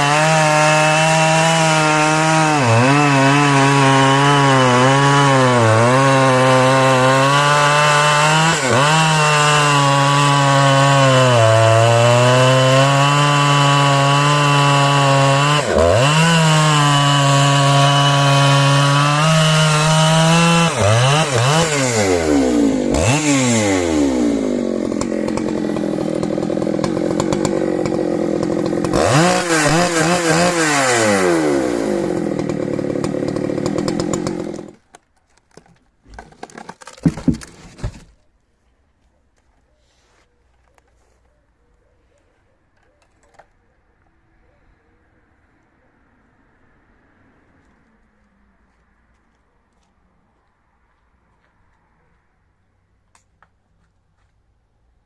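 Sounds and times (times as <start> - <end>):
chainsaw throttle blips: 0.0 - 34.8
chainsaw cutting wood: 0.0 - 38.1.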